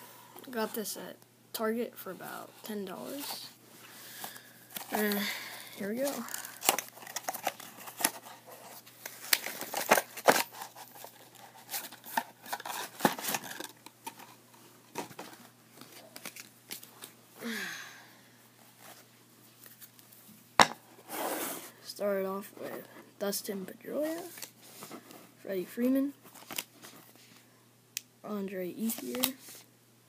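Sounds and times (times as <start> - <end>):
cardboard and wrapper tearing: 6.0 - 13.8.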